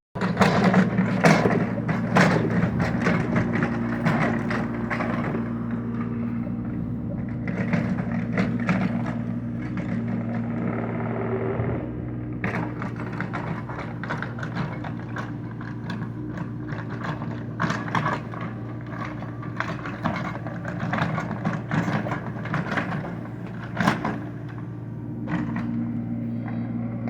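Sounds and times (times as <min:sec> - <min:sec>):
excavator engine running: 0:00.2 - 0:27.0.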